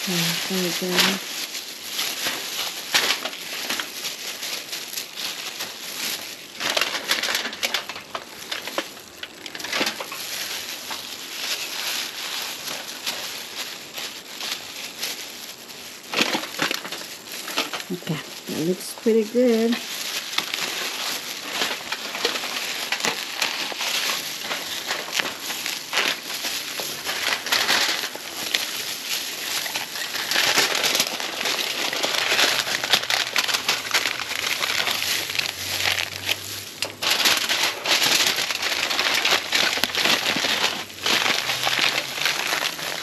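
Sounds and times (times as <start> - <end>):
fish sizzling in hot oil: 7.4 - 17.9.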